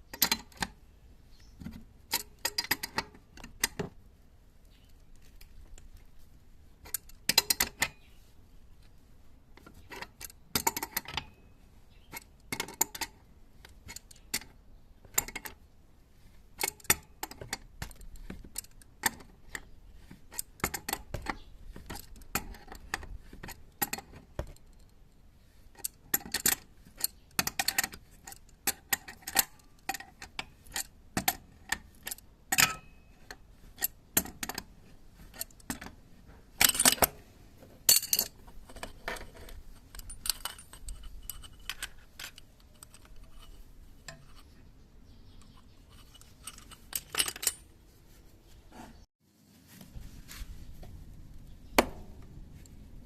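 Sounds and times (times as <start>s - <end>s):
metal tools clinking: 25.8s - 34.6s, 36.6s - 37.2s, 37.8s - 44.5s, 45.2s - 47.7s.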